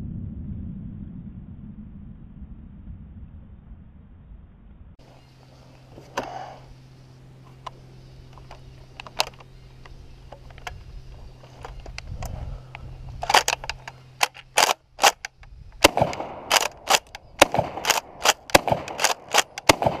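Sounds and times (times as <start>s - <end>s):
faint clicks and knocks: 7.4s - 15.5s
rapid gunshots: 14.2s - 20.0s.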